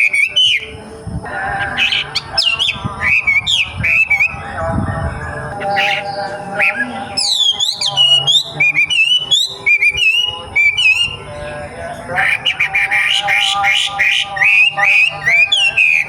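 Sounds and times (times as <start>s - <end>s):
bird singing whistled notes: 0.0s - 0.8s, 1.6s - 11.4s, 12.2s - 16.0s.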